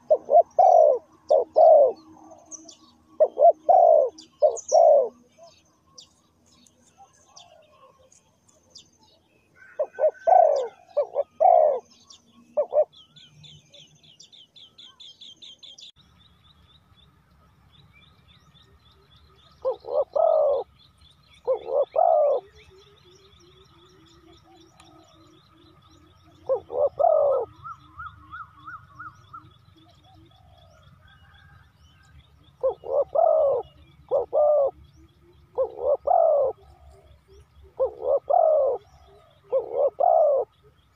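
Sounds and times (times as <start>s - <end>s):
dove cooing: 0.0s - 6.0s, 9.6s - 13.1s, 19.4s - 31.6s, 32.5s - 40.9s.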